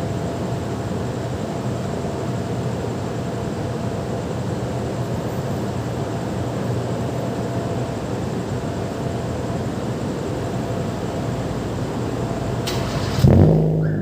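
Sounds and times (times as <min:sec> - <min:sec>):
garage background noise: 0:00.0 - 0:14.0
car exhaust idling: 0:12.4 - 0:14.0.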